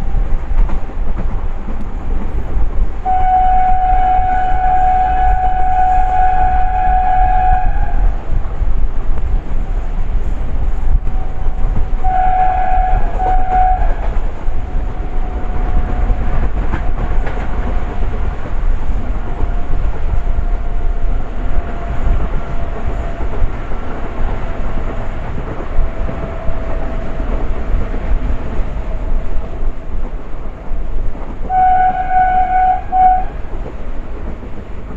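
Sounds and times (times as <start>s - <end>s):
train rumbling: 0.0s - 34.9s
locomotive horn blast: 3.0s - 8.0s, 11.1s - 14.1s, 31.5s - 33.4s.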